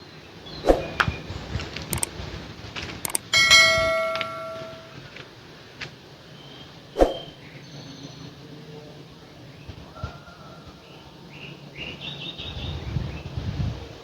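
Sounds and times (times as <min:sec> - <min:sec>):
bell-like metal chime: 0:03.3 - 0:05.0.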